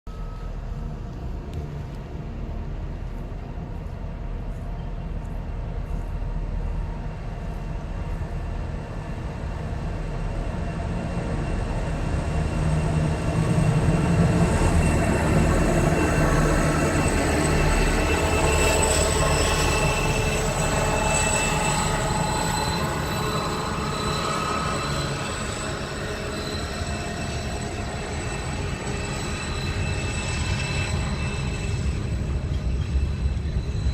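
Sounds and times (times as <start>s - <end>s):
wheels squealing: 13.2s - 33.9s.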